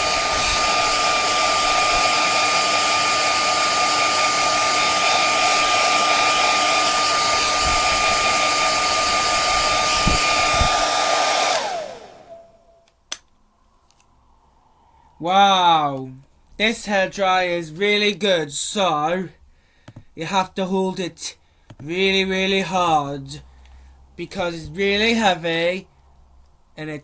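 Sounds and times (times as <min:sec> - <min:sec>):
hair dryer blowing: 0:00.0 - 0:12.8.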